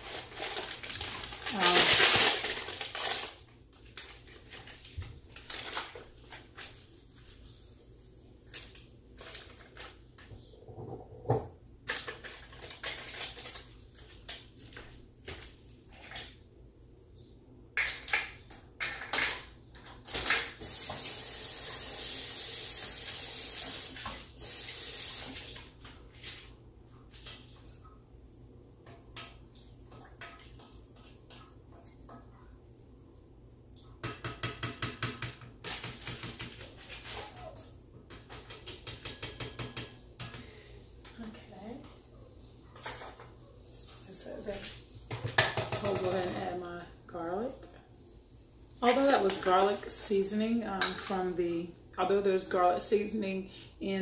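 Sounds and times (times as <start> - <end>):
kitchen clicks and knocks: 17.8 - 20.5, 34.0 - 37.0, 38.1 - 40.5, 42.8 - 43.4, 45.1 - 46.6, 50.8 - 51.2
water running: 20.5 - 34.2, 48.7 - 53.1.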